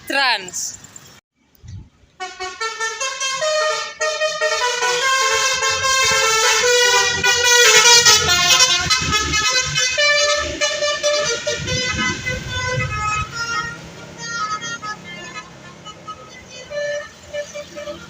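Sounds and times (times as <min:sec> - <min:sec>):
multi-tone bus horn playing a tune: 0:02.2 - 0:18.0.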